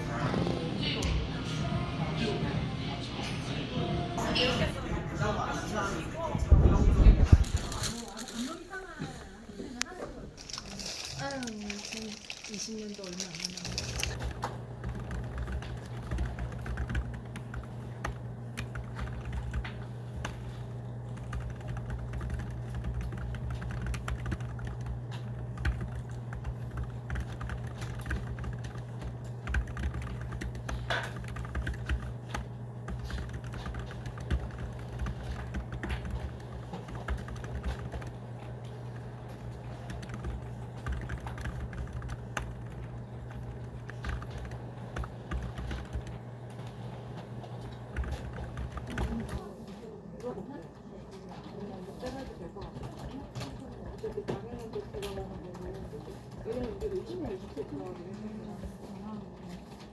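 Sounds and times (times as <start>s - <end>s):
steady low hum: 0.0s - 59.9s
fast keyboard typing: 10.4s - 49.9s, 51.4s - 59.9s.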